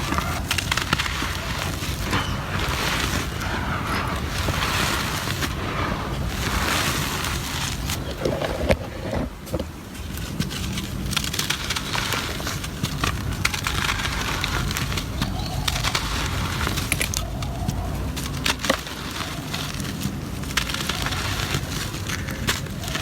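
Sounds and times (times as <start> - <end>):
cement crumbling crunch: 0.0 - 23.0
small cracks: 0.0 - 23.0.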